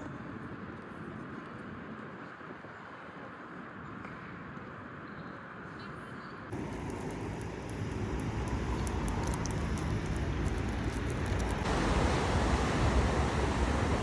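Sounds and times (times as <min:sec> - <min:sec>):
low outdoor background noise: 0:11.6 - 0:14.0.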